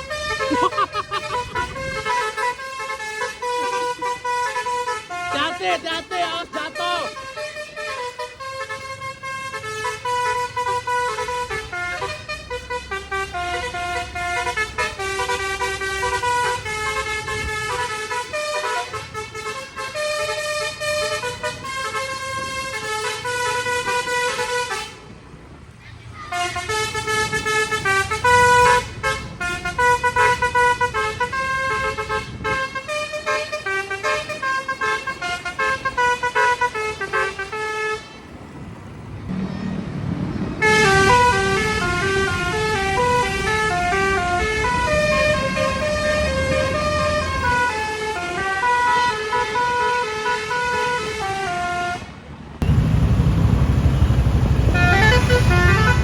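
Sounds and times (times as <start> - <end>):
bus horn playing melodies: 0.0 - 25.3, 26.3 - 38.4, 40.6 - 56.0
loud low rumble: 52.6 - 56.0.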